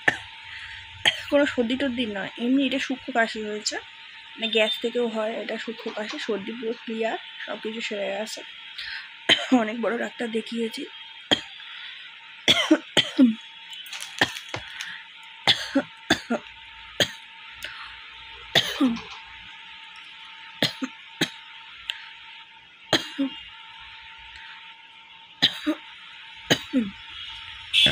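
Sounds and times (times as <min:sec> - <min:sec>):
woman coughing: 0:01.1 - 0:01.4, 0:09.3 - 0:09.6, 0:12.5 - 0:13.4, 0:15.5 - 0:16.4, 0:18.6 - 0:19.0, 0:20.6 - 0:21.4, 0:23.0 - 0:23.4, 0:25.4 - 0:25.8, 0:26.5 - 0:26.9.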